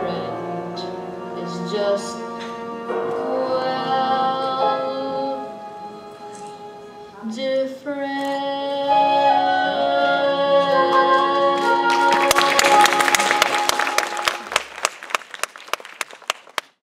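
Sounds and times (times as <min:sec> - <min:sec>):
held musical chord: 0:09.3 - 0:14.6
audience applause: 0:10.9 - 0:16.8.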